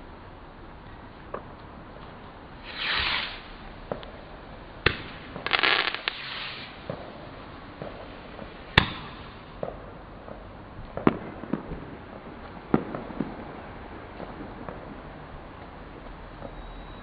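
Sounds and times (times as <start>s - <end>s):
fireworks crackling: 1.2s - 17.0s
firework bangs: 2.6s - 15.2s.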